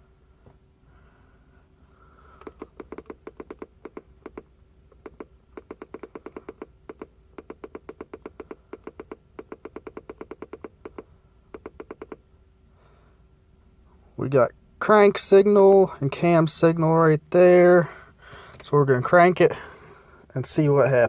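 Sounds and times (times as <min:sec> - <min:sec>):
rapid key press clicks: 0:02.4 - 0:12.2.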